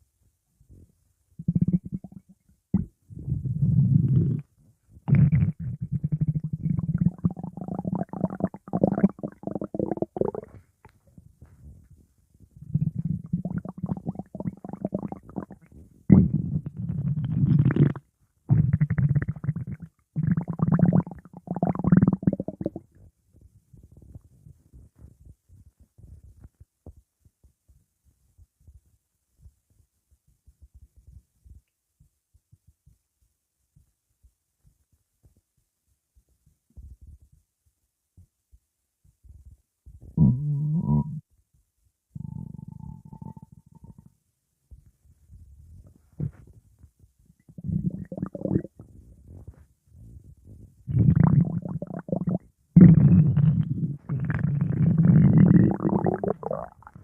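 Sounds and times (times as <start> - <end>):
stomach growling: 1.4 - 11.8, 12.5 - 23.1, 40.0 - 41.2, 42.1 - 44.2, 47.4 - 57.0.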